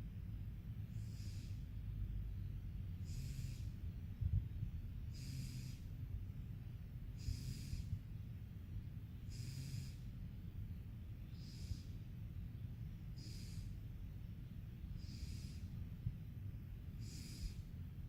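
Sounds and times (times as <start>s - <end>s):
cat snoring: 9.4s - 10.0s, 17.0s - 17.6s.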